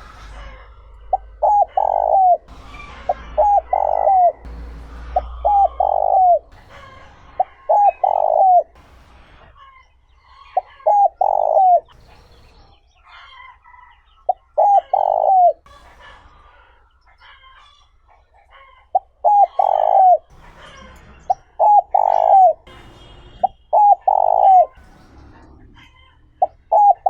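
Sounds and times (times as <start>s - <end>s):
dove cooing: 0.0s - 4.5s, 5.1s - 8.8s, 10.5s - 12.0s, 14.3s - 15.6s, 18.6s - 22.7s, 23.4s - 24.8s, 25.8s - 27.0s
small birds chirping: 0.0s - 27.0s.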